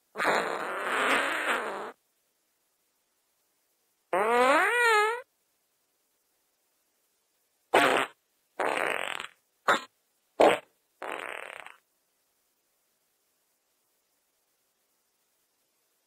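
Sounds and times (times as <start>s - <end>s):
fart sounds: 0.1s - 2.0s, 4.1s - 5.3s, 7.7s - 11.8s.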